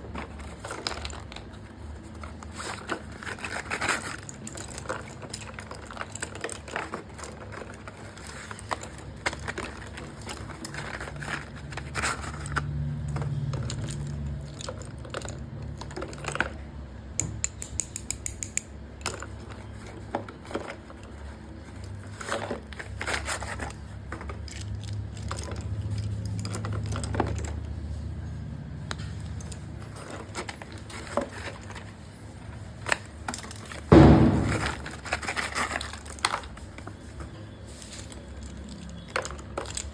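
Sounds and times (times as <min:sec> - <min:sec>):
pencils clicking and clattering: 0:00.0 - 0:39.9
loud thump: 0:33.9 - 0:34.9.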